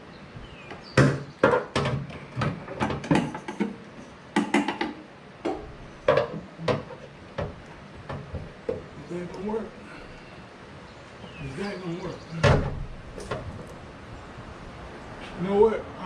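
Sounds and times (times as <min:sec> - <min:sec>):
knocks and clunks of hard objects: 0:01.0 - 0:03.8, 0:04.4 - 0:08.9, 0:12.4 - 0:13.8.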